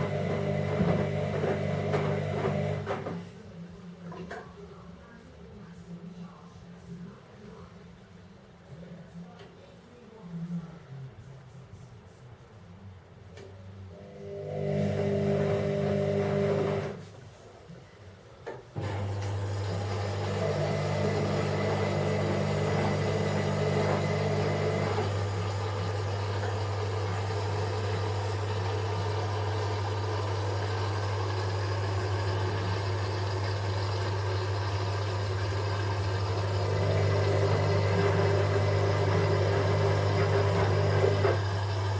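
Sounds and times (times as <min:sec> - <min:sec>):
washing machine humming: 0:00.0 - 0:04.3, 0:13.9 - 0:17.2, 0:18.7 - 0:41.9.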